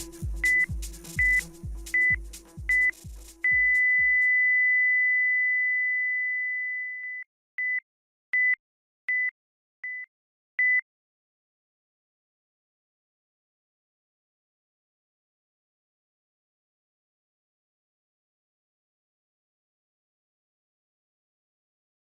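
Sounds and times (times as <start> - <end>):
pulsing electronic bass beat: 0.0 - 4.3
long steady beep: 0.4 - 1.4, 2.0 - 7.8
short high electronic beeps: 0.4 - 4.6.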